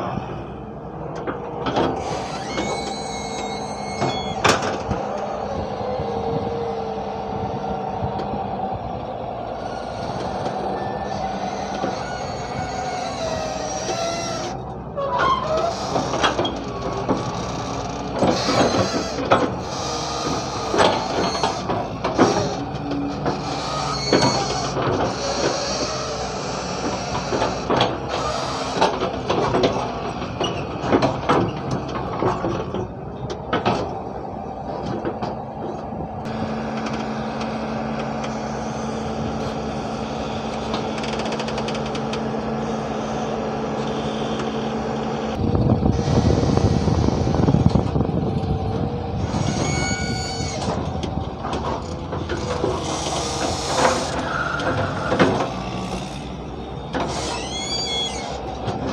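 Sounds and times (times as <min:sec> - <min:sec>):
excavator diesel engine running: 0:00.0 - 0:58.9
high squeal: 0:02.0 - 0:05.8, 0:09.5 - 0:27.6, 0:49.2 - 0:50.8, 0:52.8 - 0:58.5
machine knocks and clatter: 0:15.6 - 0:26.0, 0:26.8 - 0:34.0, 0:50.6 - 0:56.3.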